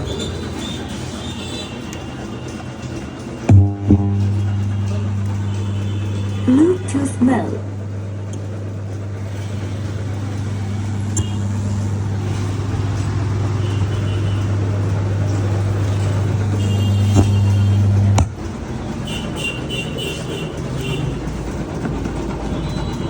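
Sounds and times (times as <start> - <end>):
loudspeaker low hum with hiss: 3.4 - 18.5.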